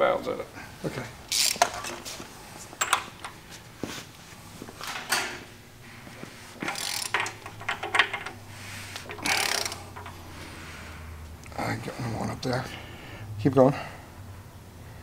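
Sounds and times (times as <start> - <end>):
ratchet strokes: 6.6 - 10.2
metallic clanks of hand tools: 9.0 - 10.3.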